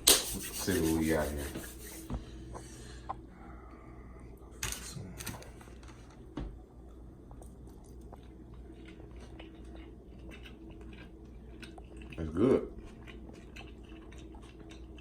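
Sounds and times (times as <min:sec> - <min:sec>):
faint chewing: 0:06.8 - 0:15.0
person crunching pizza: 0:07.3 - 0:15.0.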